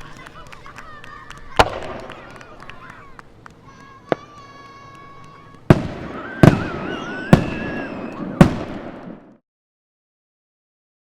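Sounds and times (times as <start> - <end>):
firework booms: 1.6 - 2.5, 4.0 - 9.4
wavering whistle-like tone: 6.1 - 8.2.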